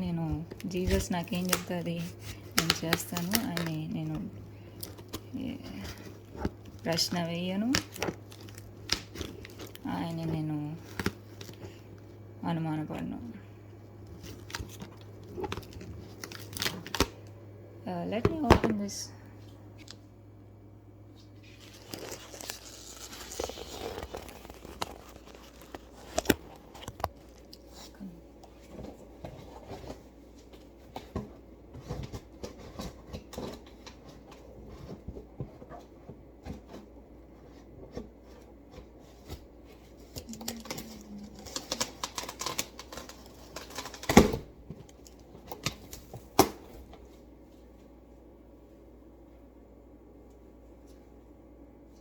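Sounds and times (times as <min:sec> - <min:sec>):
packaging tearing and crinkling: 0:00.7 - 0:04.2, 0:04.8 - 0:10.0, 0:14.2 - 0:17.2, 0:21.4 - 0:27.5, 0:40.2 - 0:46.6.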